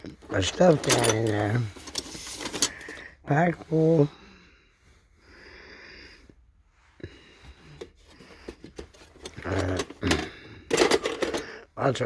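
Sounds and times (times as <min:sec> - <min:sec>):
metal tools clinking in toolbox: 0:00.3 - 0:03.0, 0:08.8 - 0:11.6.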